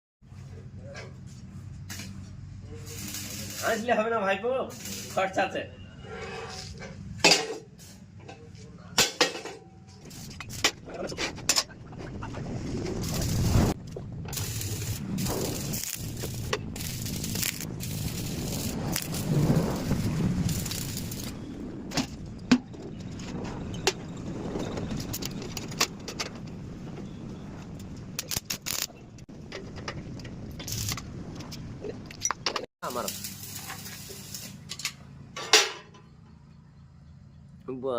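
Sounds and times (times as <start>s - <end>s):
steady low rumble: 9.9s - 32.4s
steel pieces clanking: 14.3s - 21.4s.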